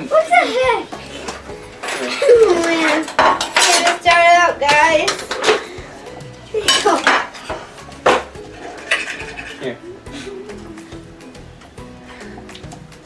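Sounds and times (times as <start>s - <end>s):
cutlery clinking on plates: 1.0s - 9.6s.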